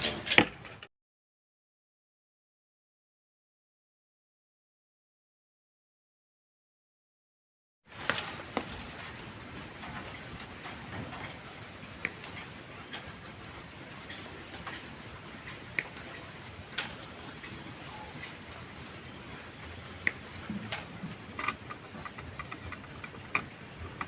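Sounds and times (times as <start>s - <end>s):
birds chirping: 0.0s - 0.9s, 7.9s - 24.0s.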